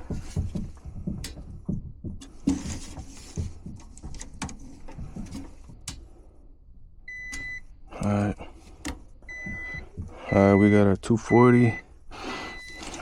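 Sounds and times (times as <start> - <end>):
rustling and scraping of tools: 0.0 - 6.4, 12.2 - 13.0.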